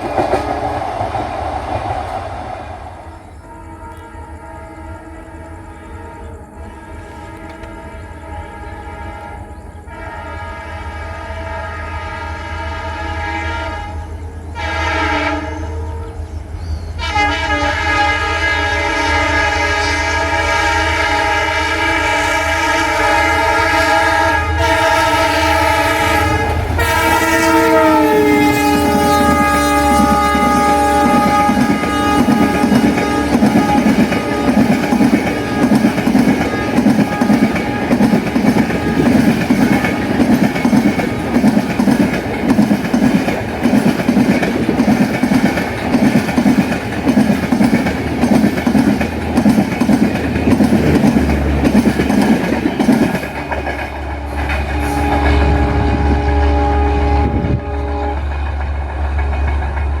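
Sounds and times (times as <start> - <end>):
train wheels clacking: 0.0 - 3.0, 25.1 - 56.0, 57.8 - 60.0
low train rumble: 0.0 - 60.0
locomotive horn: 3.2 - 42.4, 54.0 - 59.5.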